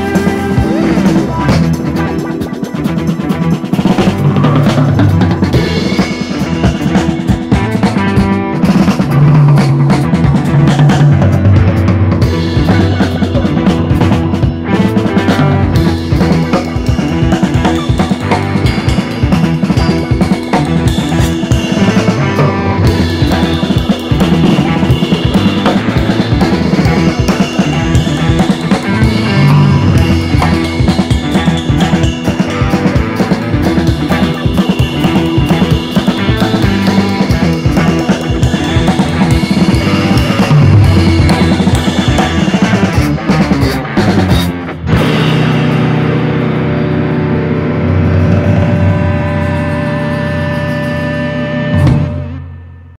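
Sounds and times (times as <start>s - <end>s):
music with driving drum beat: 0.0s - 52.6s.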